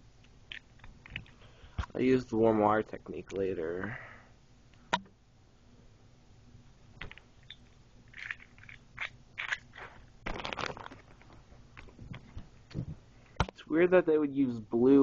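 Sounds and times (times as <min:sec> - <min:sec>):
packaging crinkling: 0:08.1 - 0:12.3.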